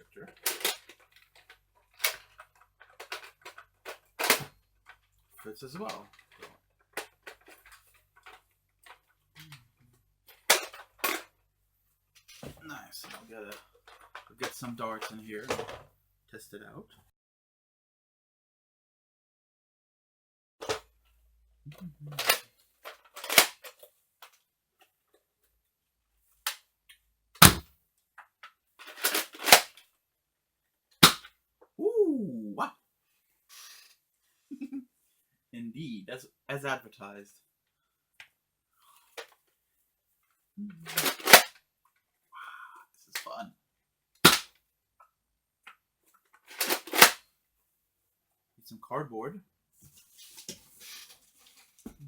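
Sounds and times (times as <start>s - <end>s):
toy blaster clicks and knocks: 0.4s - 5.0s, 10.4s - 11.2s, 22.2s - 24.4s, 27.4s - 27.6s, 28.2s - 29.8s, 31.0s - 31.3s, 40.9s - 41.6s, 44.2s - 44.5s, 46.5s - 47.2s
sharp plastic clacks: 22.2s - 24.4s, 27.4s - 27.6s, 28.8s - 29.8s, 31.0s - 31.3s, 40.9s - 41.6s, 44.2s - 44.6s, 46.3s - 47.2s
toy blaster plastic clicks and snaps: 23.2s - 23.7s, 27.4s - 27.6s, 29.0s - 29.8s, 31.0s - 31.3s, 40.9s - 41.6s, 44.2s - 44.5s, 46.5s - 47.2s.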